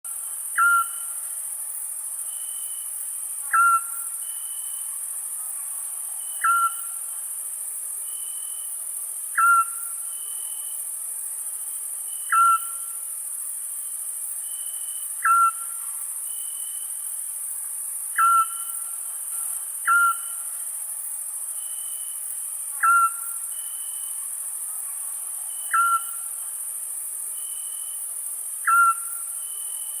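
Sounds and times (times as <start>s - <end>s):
crickets chirping: 0.1s - 30.0s
owl hooting: 9.4s - 9.8s, 12.3s - 12.7s, 15.2s - 15.6s, 19.9s - 20.2s, 22.8s - 23.2s, 25.7s - 26.2s, 28.7s - 29.1s.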